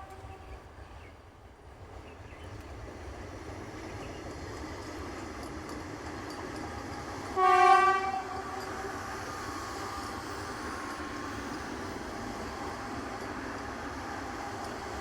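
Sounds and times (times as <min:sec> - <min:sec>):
train horn blast: 0:00.0 - 0:00.6, 0:07.3 - 0:09.2
train running rumble: 0:00.0 - 0:15.0.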